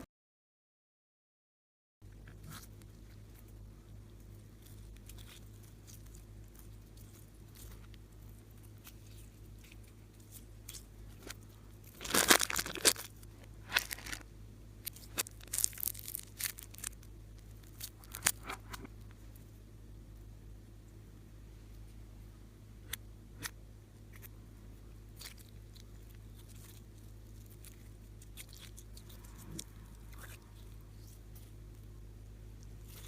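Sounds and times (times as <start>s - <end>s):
plastic crinkling: 4.6s - 14.2s, 14.9s - 18.9s
plastic tearing: 11.2s - 14.2s, 14.9s - 17.0s, 17.6s - 18.9s.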